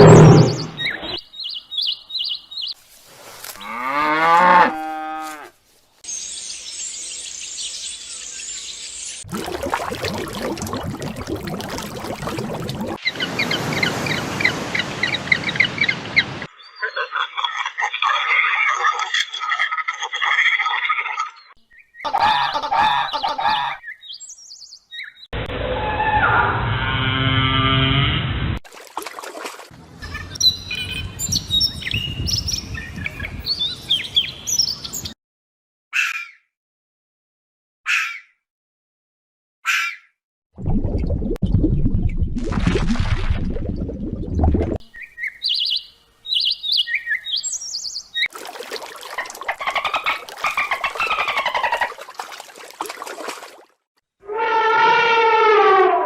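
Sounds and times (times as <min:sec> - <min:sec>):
bird chirping: 0:00.0 - 0:02.8, 0:06.1 - 0:09.2, 0:21.4 - 0:25.3, 0:30.0 - 0:35.1, 0:44.8 - 0:48.3.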